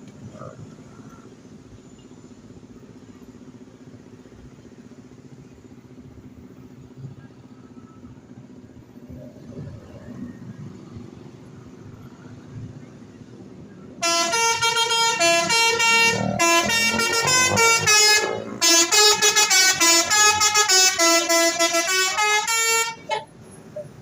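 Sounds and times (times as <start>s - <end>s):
vehicle engine running: 0.0s - 24.0s
passing vehicle noise: 3.6s - 24.0s.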